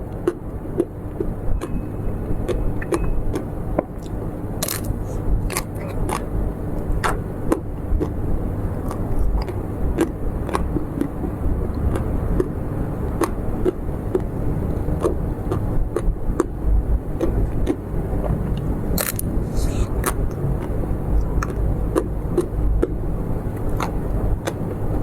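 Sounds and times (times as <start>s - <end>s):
mouth clicks and smacks eating: 0.0s - 25.0s
steady low rumble: 0.0s - 25.0s.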